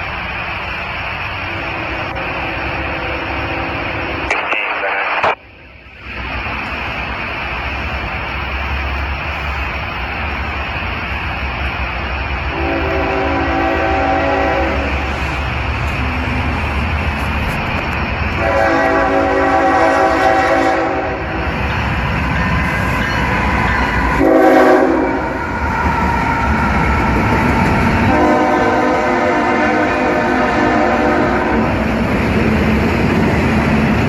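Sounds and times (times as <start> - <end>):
moving train rumble: 0.0 - 34.0
locomotive horn blasts: 12.5 - 15.1, 18.4 - 21.4, 24.2 - 25.2, 28.1 - 31.6.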